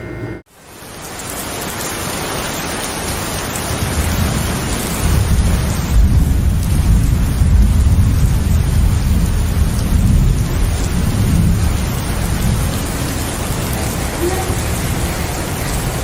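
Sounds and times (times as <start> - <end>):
rain falling: 0.5 - 16.0
low rumble of thunder: 3.7 - 16.0.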